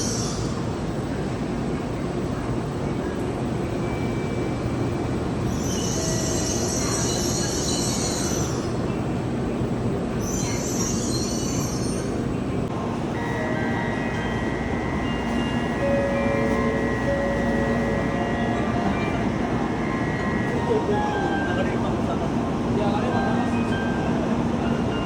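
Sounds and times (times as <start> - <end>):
train rushing rumble: 0.0 - 25.0
steady tones: 12.7 - 22.8
high-pitched sound: 13.1 - 21.7.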